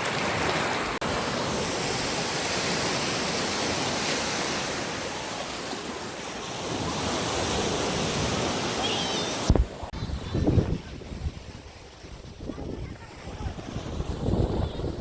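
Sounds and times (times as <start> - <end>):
ocean surf washing: 0.0 - 15.0
wind on microphone: 6.7 - 15.0.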